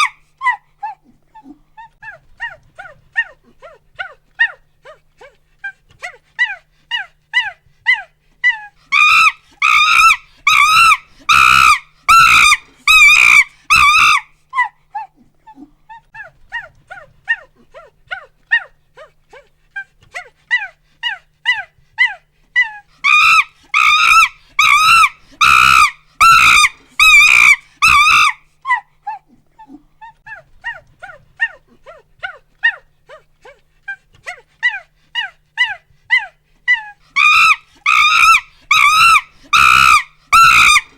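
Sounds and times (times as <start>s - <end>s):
monkey hooting and screaming: 0.0s - 1.0s, 6.4s - 14.7s, 20.5s - 29.2s, 34.3s - 40.9s.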